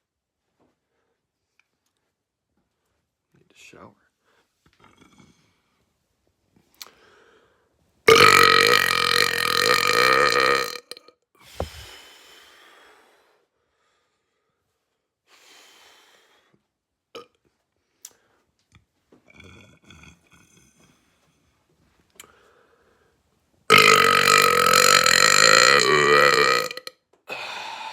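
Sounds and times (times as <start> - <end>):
person burping loudly: 8.1 - 11.0, 23.7 - 27.9.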